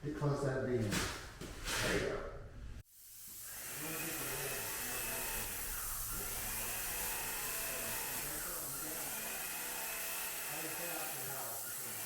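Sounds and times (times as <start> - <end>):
small motor whirring with hiss: 2.9 - 12.0.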